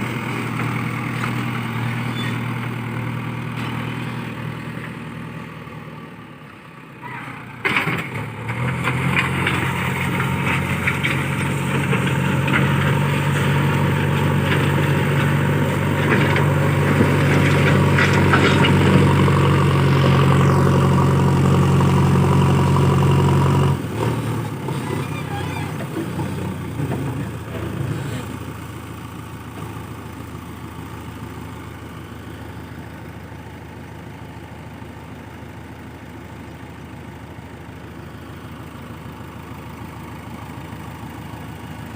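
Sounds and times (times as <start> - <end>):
diesel engine revving: 0.0 - 31.8.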